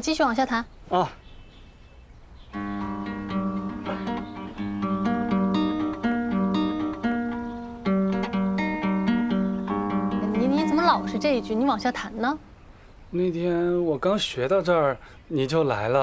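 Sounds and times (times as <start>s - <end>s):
acoustic guitar picked melody: 2.5s - 12.6s.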